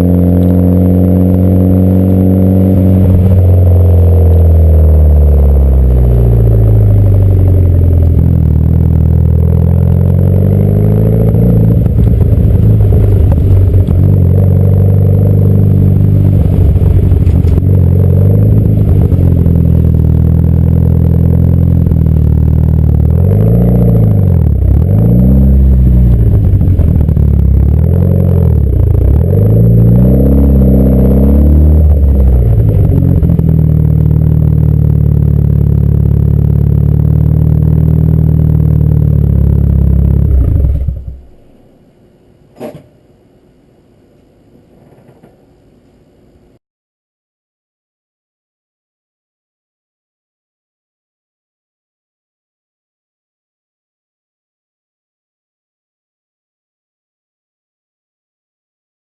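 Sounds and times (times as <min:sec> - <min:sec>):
turbocharged car engine revving: 0:00.0 - 0:41.5.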